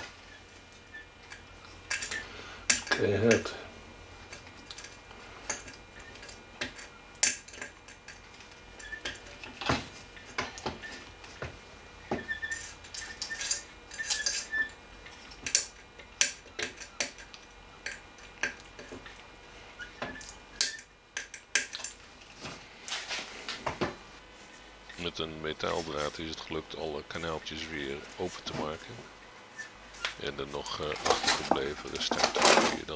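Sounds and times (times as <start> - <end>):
metal wire clicking and scraping: 0.8 - 3.5, 4.3 - 9.6, 12.4 - 19.2
short squeaks: 12.2 - 14.8.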